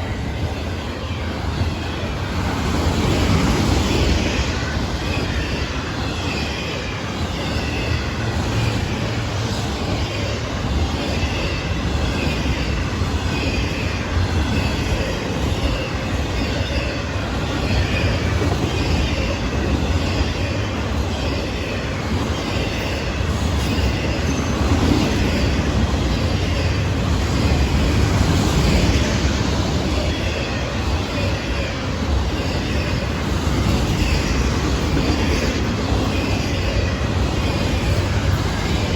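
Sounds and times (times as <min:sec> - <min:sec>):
train wheels rumbling on rail: 0:00.0 - 0:38.9.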